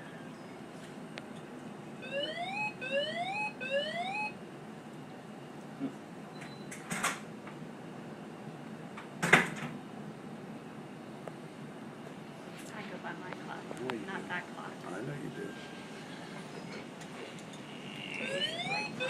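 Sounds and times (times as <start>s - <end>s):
rising electronic alert tones: 2.0s - 4.3s, 18.0s - 19.0s.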